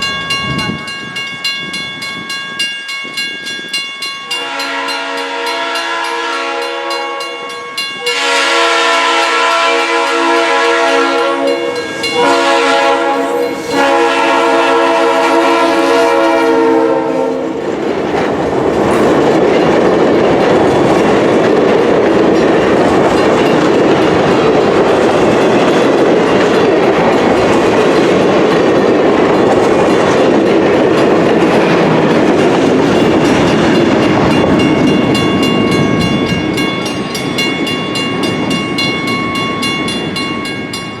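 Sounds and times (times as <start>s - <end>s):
train passing on rails: 0.0s - 41.0s
locomotive horn blowing: 4.3s - 17.6s
high ringing: 11.4s - 14.0s.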